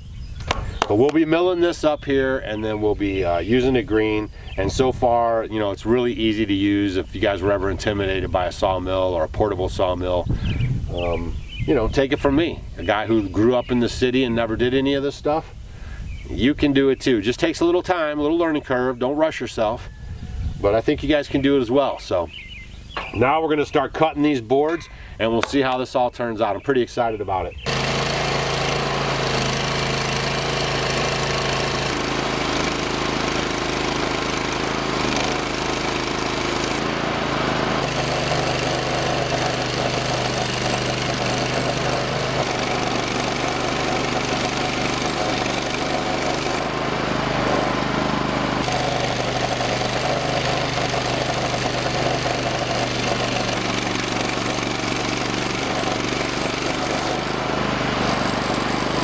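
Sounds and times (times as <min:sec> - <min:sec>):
sawmill engine running under load: 0:27.6 - 0:59.0.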